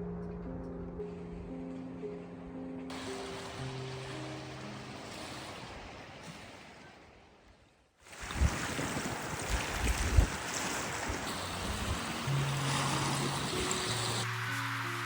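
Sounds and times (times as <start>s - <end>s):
sea waves washing on shore: 2.9s - 15.0s
wind buffeting microphone: 8.1s - 14.3s.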